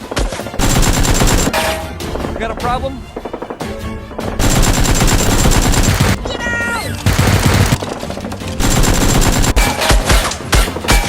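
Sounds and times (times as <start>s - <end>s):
background music: 0.0s - 11.0s
automatic gunfire: 0.6s - 1.5s, 4.4s - 6.2s, 7.0s - 7.9s, 8.6s - 9.7s.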